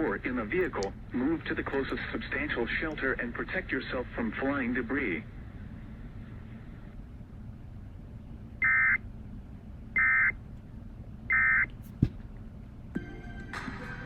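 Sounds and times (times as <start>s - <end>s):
radio hiss: 0.0s - 5.3s.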